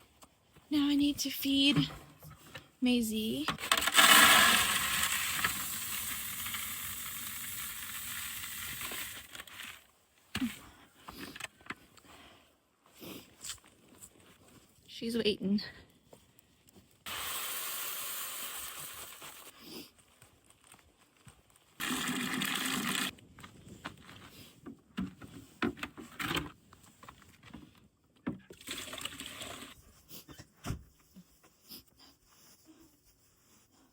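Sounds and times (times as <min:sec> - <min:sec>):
pouring hiss into container: 0:03.8 - 0:09.5, 0:17.1 - 0:19.5, 0:21.8 - 0:23.1
small knocks and rustles: 0:23.1 - 0:28.6, 0:29.8 - 0:33.1.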